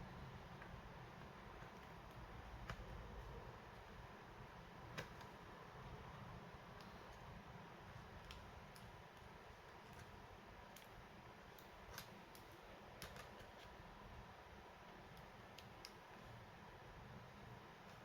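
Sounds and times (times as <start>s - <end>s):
low steady hiss: 0.0s - 18.0s
faint clicks of small parts handled: 8.2s - 13.8s.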